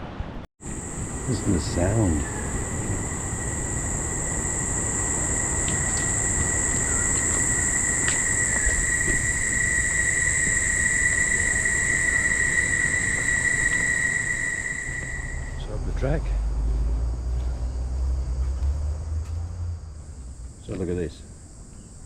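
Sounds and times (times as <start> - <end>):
cicadas buzzing: 0.6 - 22.0
faint clicks: 5.6 - 9.2.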